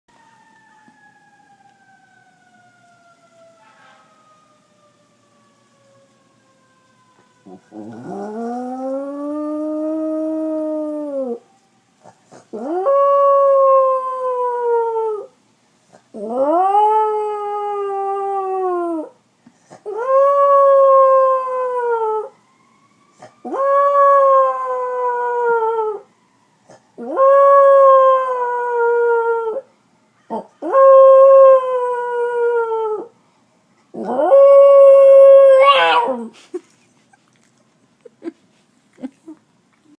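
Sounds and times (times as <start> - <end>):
dog howling: 7.4 - 11.4, 12.5 - 15.3, 16.2 - 19.2, 19.8 - 22.3, 23.4 - 26.0, 27.0 - 29.7, 30.3 - 33.1, 34.0 - 36.3.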